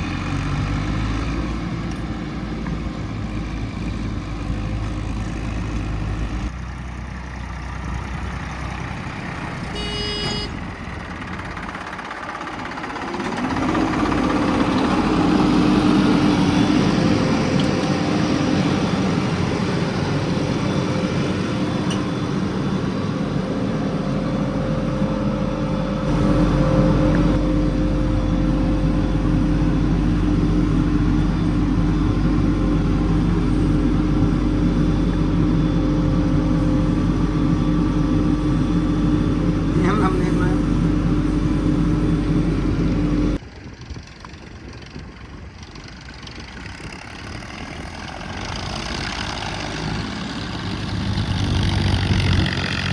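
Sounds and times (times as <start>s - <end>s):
heavy machinery diesel engine: 0.0s - 52.9s
short horn toot: 9.7s - 10.6s.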